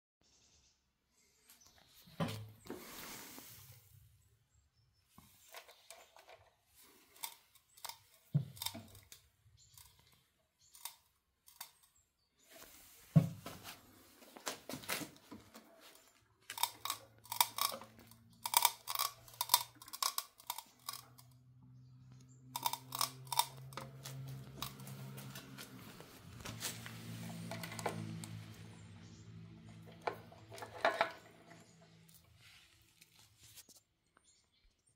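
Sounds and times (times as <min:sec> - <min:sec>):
e-bike sharp cracking clicks: 0:16.5 - 0:21.3, 0:22.6 - 0:25.7
low motor hum: 0:20.5 - 0:32.4.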